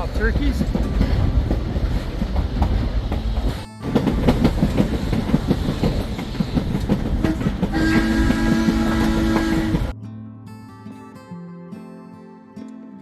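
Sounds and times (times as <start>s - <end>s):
loud rumbling with rattles: 0.0s - 9.9s.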